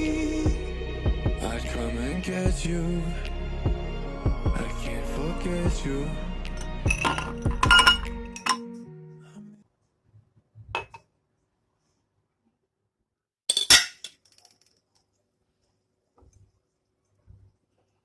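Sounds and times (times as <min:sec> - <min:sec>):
kitchenware clinking: 0:06.6 - 0:08.7, 0:10.8 - 0:11.0, 0:13.5 - 0:14.5.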